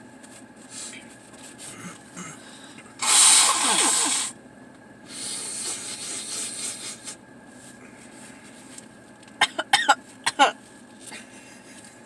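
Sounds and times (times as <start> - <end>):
rubbing hiss: 3.0 - 4.3.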